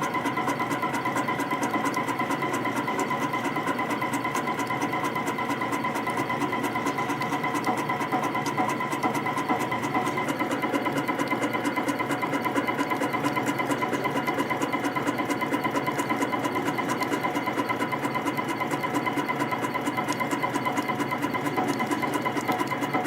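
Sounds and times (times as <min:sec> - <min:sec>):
fast even machine ticking: 0:00.0 - 0:23.0
motor and servo hum: 0:00.0 - 0:23.0.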